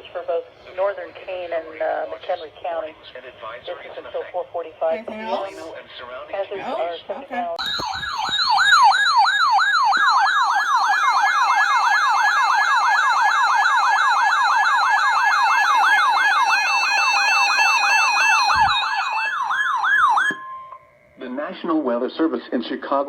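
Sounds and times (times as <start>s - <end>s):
electronic siren yelp: 7.6s - 21.4s.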